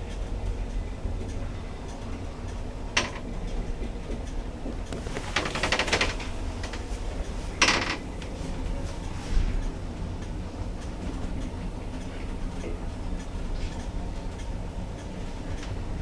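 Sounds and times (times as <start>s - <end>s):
rapid rattling clatter: 4.9s - 6.8s.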